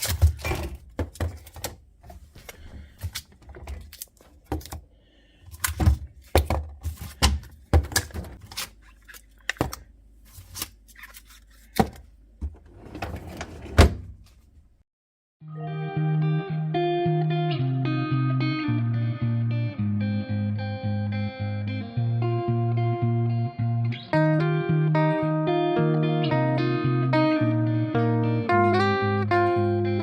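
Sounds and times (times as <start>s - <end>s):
handling noise: 0.0s - 4.8s
plastic bins clunking on shelves: 0.0s - 4.8s, 5.5s - 8.4s, 11.8s - 14.4s.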